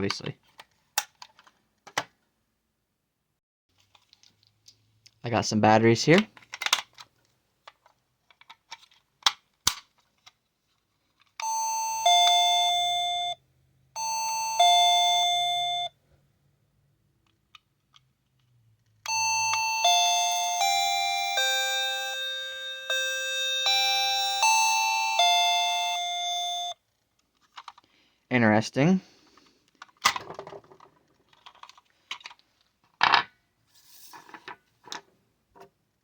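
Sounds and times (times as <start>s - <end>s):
doorbell chime tune: 11.4s - 13.4s, 14.0s - 16.0s, 19.1s - 26.8s
doorbell ding-dong: 11.4s - 13.4s, 14.0s - 16.0s, 19.1s - 26.8s.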